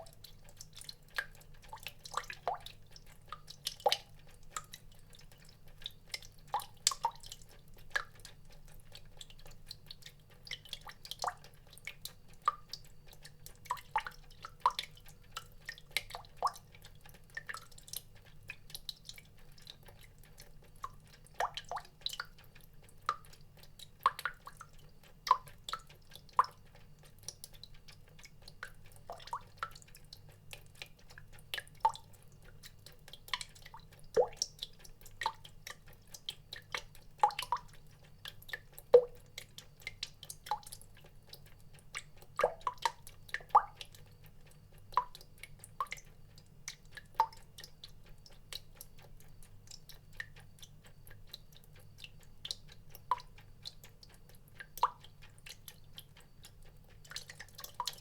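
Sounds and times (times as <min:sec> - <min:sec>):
water drops plinking into water: 0:28.6 - 0:30.0, 0:32.7 - 0:37.7, 0:38.3 - 0:40.8, 0:42.0 - 0:44.0.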